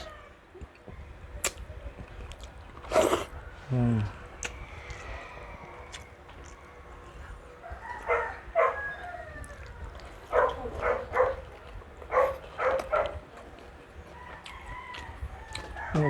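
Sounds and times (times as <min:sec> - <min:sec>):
dog barking: 0:07.8 - 0:13.6.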